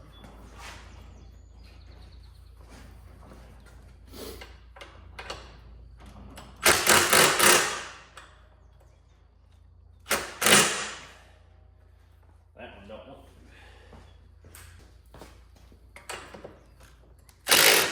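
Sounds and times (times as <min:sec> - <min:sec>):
tool rasping: 0:06.6 - 0:08.0, 0:17.5 - 0:17.9
hand tools clinking and knocking: 0:15.9 - 0:17.9.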